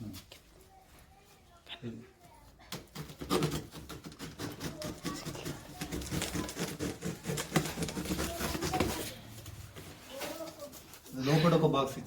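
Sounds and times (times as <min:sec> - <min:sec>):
cardboard and packing rustling: 0:00.0 - 0:11.6
knife cutting cardboard: 0:02.7 - 0:09.2.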